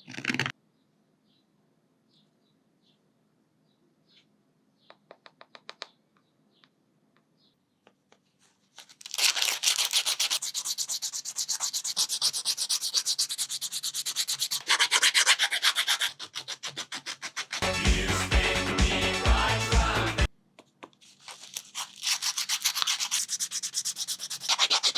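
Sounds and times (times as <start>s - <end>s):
sandpaper rubbing on wood: 9.6s - 17.8s, 21.6s - 24.9s
music: 17.6s - 20.3s.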